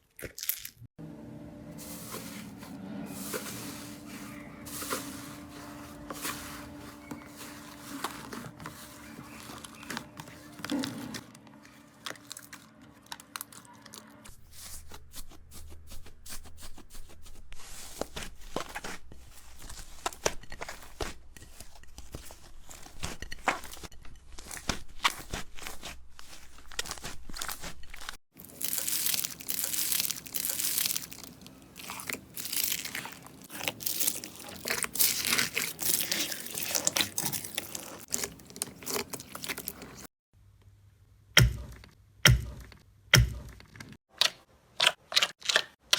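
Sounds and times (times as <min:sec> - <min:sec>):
slime crackling and popping: 0:28.4 - 0:39.9.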